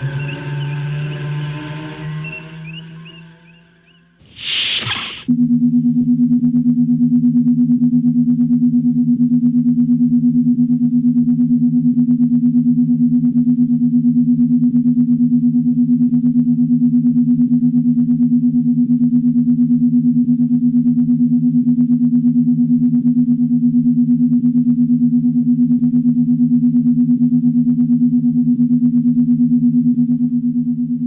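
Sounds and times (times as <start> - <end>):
pulsing low electronic hum: 0.0 - 4.2.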